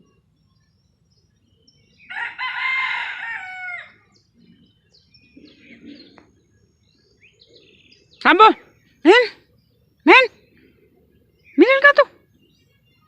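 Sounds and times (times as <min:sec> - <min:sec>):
small birds chirping: 0:00.0 - 0:13.0
rooster crowing: 0:02.1 - 0:04.0.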